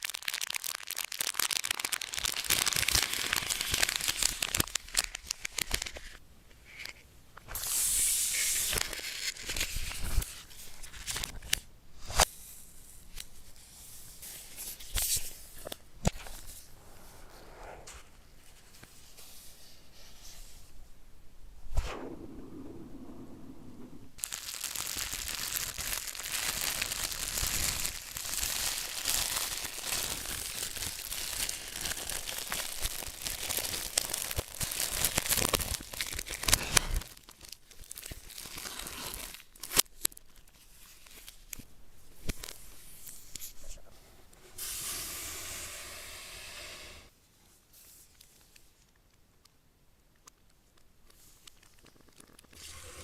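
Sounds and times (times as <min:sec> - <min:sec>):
packaging torn and crumpled: 0:00.0 - 0:06.2, 0:08.4 - 0:11.6, 0:24.2 - 0:42.6, 0:51.0 - 0:52.6.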